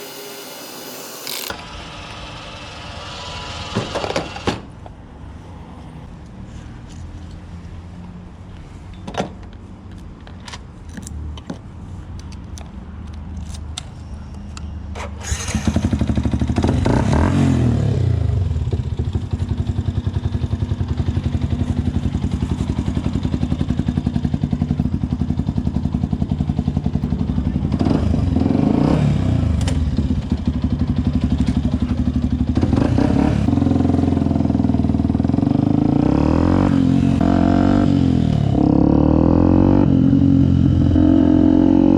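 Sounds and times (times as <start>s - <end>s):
motorcycle engine idling and revving: 14.9s - 41.9s.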